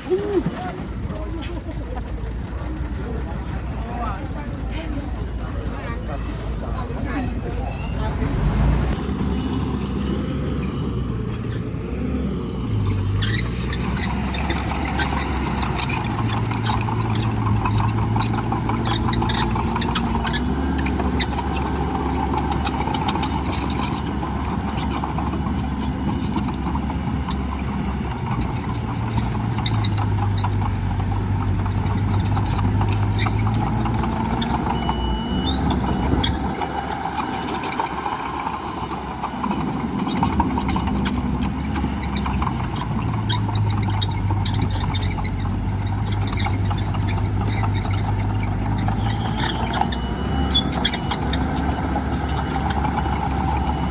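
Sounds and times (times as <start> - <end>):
heavy diesel engine working: 0.0 - 53.9.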